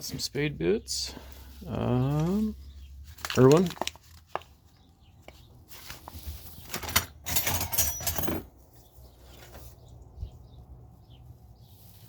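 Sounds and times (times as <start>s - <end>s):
metal tools rattling and clinking: 6.6s - 8.7s.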